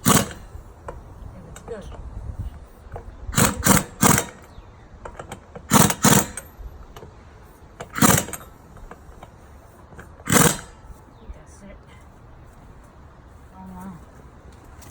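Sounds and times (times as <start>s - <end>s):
power tool bursts: 0.0s - 0.8s, 3.3s - 6.6s, 7.6s - 11.0s.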